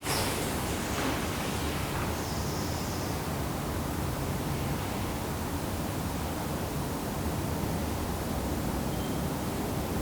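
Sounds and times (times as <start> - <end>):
steady hiss: 0.0 - 3.8.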